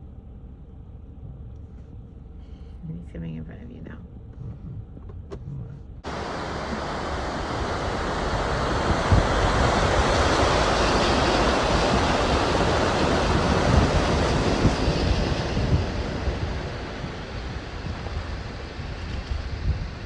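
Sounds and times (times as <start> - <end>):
wind gusting on microphone: 5.6 - 20.0
waterfall roaring: 6.1 - 19.4.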